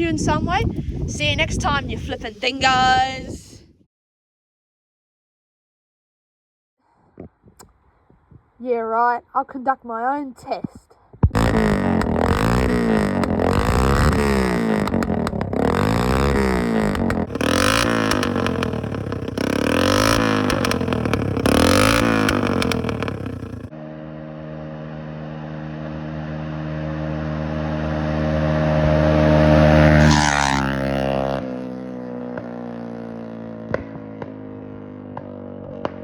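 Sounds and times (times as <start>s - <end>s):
motorbike engine revving and passing: 11.2s - 36.0s.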